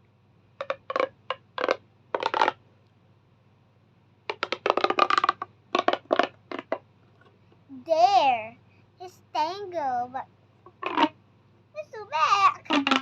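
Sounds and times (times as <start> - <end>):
plastic fidget toy clicking: 0.6 - 2.6, 4.3 - 6.8, 12.6 - 13.0.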